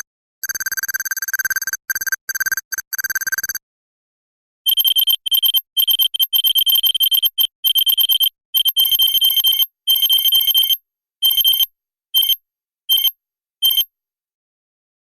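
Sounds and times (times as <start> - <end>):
rapid electronic beeps: 4.7 - 10.6
high-pitched alarm beeping: 4.7 - 10.7.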